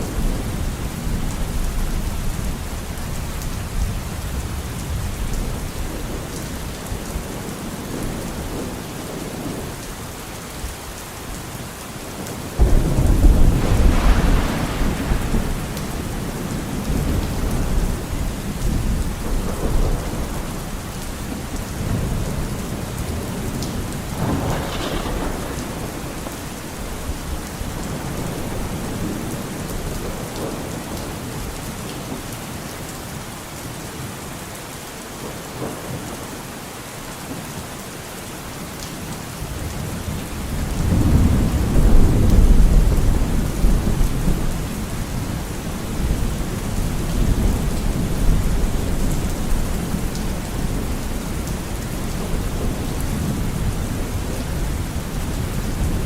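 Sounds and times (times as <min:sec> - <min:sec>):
rain falling: 0:00.0 - 0:56.0
thunder rolling: 0:12.4 - 0:30.6.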